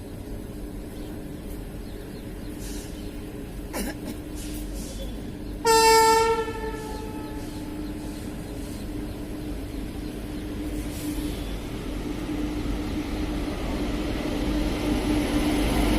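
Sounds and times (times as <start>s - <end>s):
locomotive horn blast: 5.6s - 7.9s.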